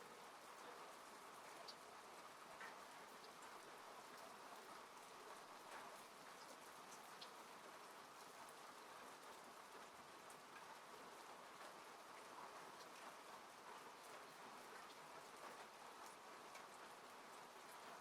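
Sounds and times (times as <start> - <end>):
rain falling on a car: 0.0 - 18.0.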